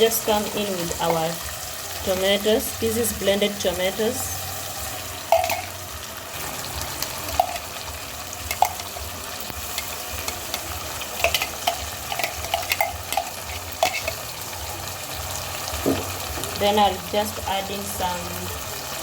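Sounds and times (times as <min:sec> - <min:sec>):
food sizzling in a pot: 0:00.0 - 0:19.0
spoon clinking against pot: 0:05.3 - 0:05.8, 0:08.4 - 0:09.0, 0:09.7 - 0:14.2.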